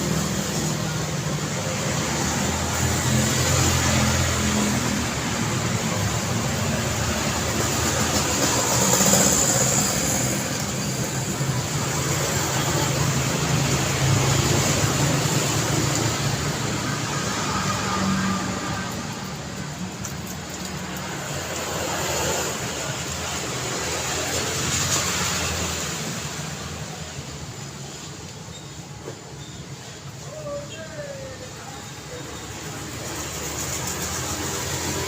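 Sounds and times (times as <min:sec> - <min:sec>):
loud vehicle passing: 0:00.0 - 0:26.7
road traffic rumble: 0:00.0 - 0:35.0.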